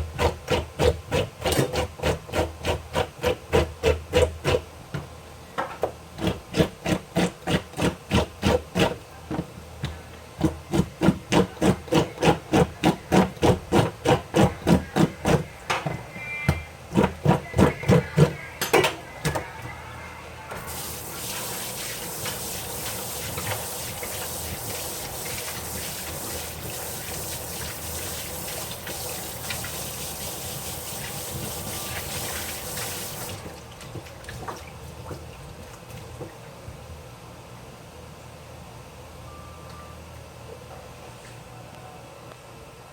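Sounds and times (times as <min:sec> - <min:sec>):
water running with dense hiss: 0:20.6 - 0:33.4.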